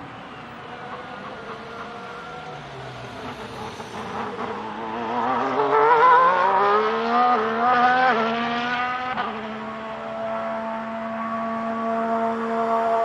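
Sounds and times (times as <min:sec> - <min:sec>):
racing car engine accelerating: 0:03.2 - 0:13.0.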